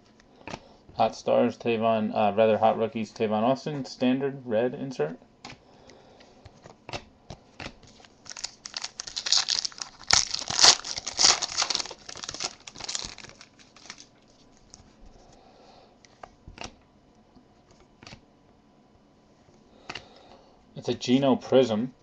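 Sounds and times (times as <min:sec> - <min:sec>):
wrapper tearing and crinkling: 0:07.8 - 0:14.8.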